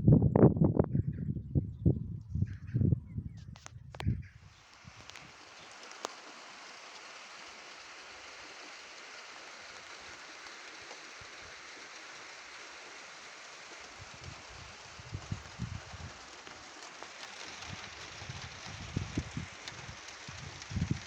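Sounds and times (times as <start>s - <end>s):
light rain hissing: 4.4s - 21.0s.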